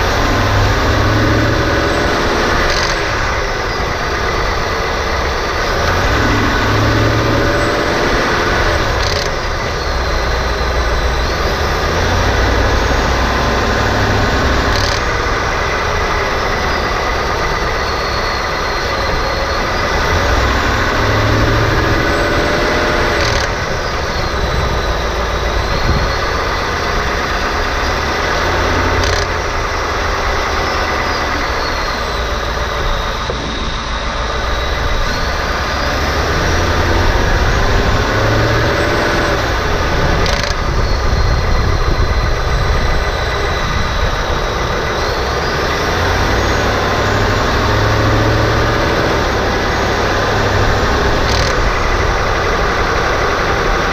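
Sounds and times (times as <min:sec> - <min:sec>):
truck engine revving gently: 0:00.0 - 0:53.9
sharp clacks: 0:23.0 - 0:23.6.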